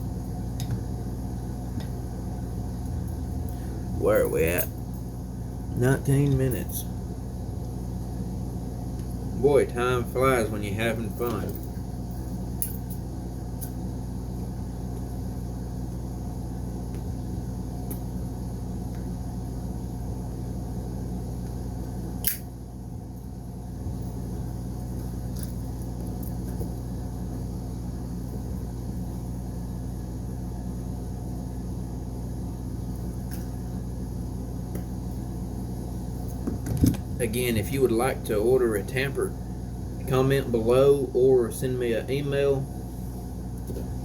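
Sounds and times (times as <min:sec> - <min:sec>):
low mechanical hum: 0:00.0 - 0:44.0
sharp click: 0:22.2 - 0:22.5.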